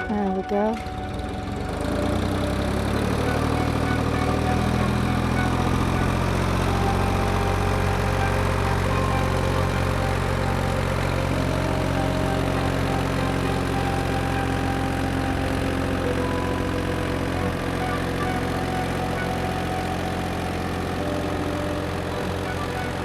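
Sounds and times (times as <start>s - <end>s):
crane engine running: 0.0s - 23.0s.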